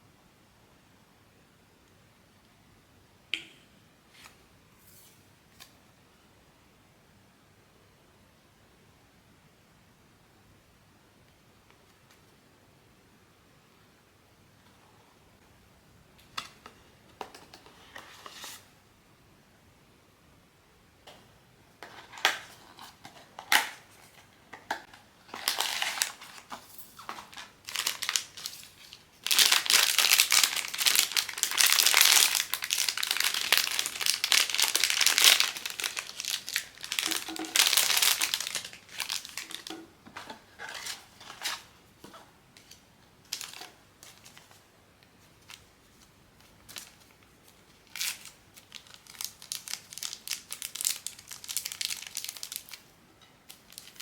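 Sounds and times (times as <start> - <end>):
plastic packaging crinkling: 25.0 - 41.7, 42.6 - 44.6, 45.4 - 52.9, 53.5 - 54.0.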